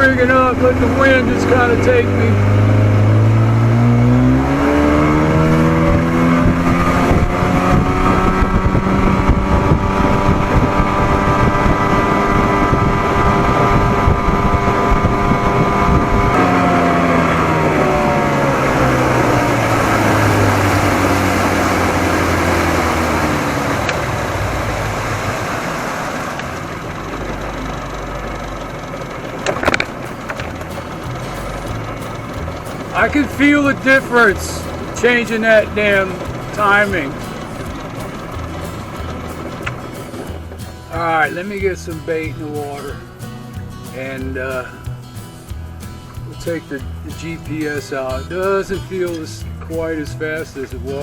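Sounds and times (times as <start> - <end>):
wind noise: 0.0 - 26.9
water noise: 0.0 - 47.4
outboard motor running: 0.0 - 51.0.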